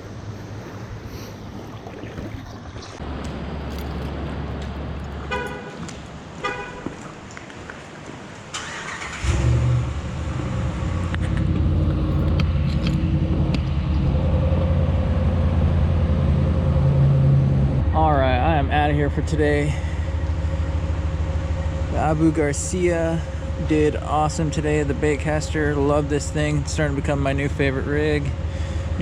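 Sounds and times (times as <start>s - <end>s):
car horn chirps: 5.3s - 7.0s
car engine starting and idling: 8.1s - 29.0s.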